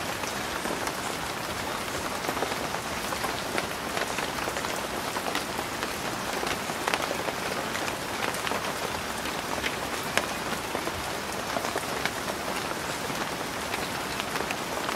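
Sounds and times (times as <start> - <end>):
rain pattering on leaves: 0.0 - 14.9.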